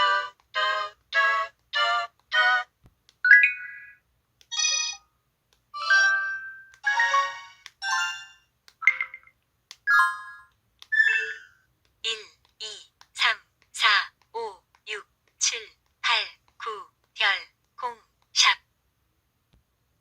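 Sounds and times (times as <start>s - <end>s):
phone chimes and beeps: 4.5s - 5.0s, 5.8s - 9.3s, 9.9s - 11.6s.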